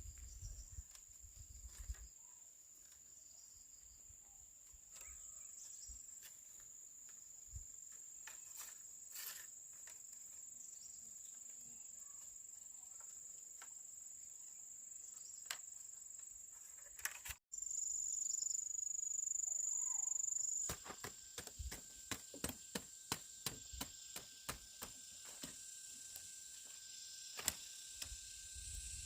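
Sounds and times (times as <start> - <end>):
insects chirring: 0.0 - 29.0
sharp knocks: 20.7 - 25.6.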